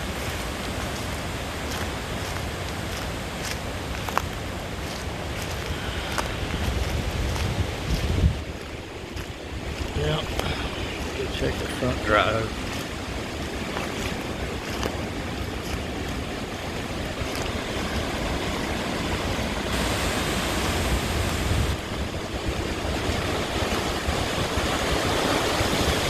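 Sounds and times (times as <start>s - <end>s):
wind buffeting microphone: 4.0s - 26.0s.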